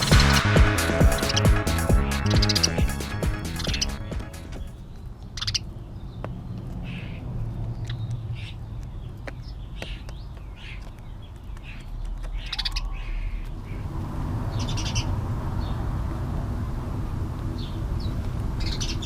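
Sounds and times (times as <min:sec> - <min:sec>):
steady low rumble: 0:00.0 - 0:04.8.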